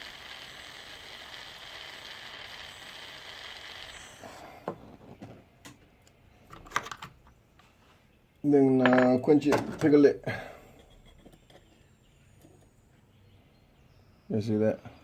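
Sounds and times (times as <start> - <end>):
soldering torch flame hissing: 0.0 - 4.8.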